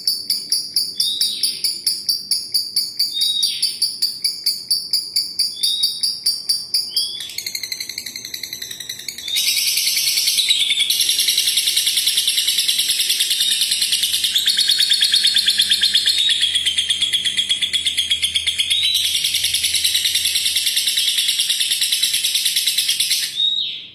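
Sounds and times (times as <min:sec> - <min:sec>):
bird chattering trill: 0:00.0 - 0:23.9
bird rising chirps: 0:06.8 - 0:23.9.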